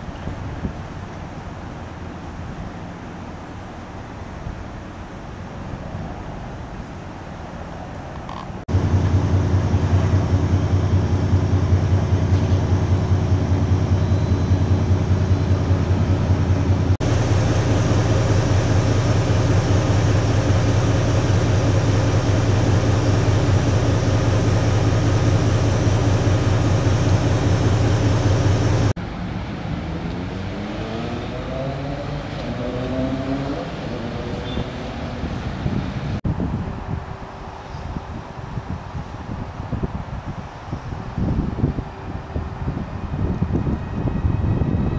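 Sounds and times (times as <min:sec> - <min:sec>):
locomotive engine drone: 0:00.0 - 0:38.4, 0:40.5 - 0:44.9
train tones rising: 0:08.7 - 0:36.1.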